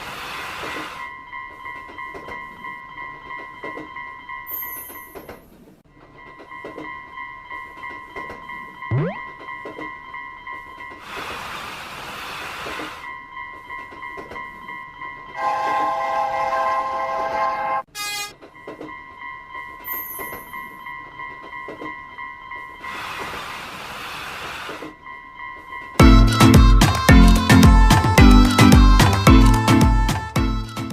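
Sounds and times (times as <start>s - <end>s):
train horn: 15.4s - 18.4s.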